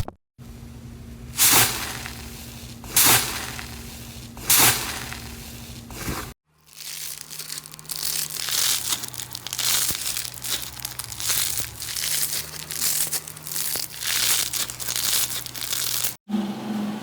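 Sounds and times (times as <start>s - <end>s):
crunchy slime squeezed by hand: 4.4s - 16.2s.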